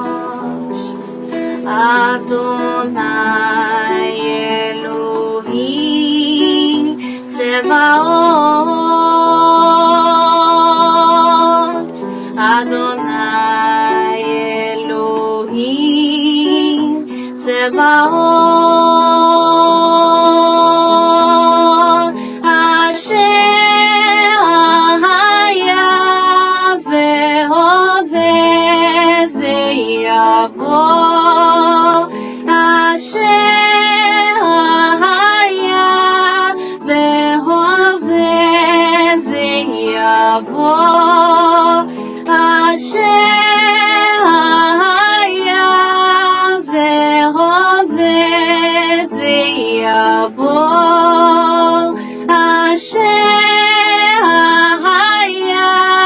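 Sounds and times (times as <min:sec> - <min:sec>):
held chords: 0:00.0 - 0:56.0
woman singing: 0:00.0 - 0:56.0.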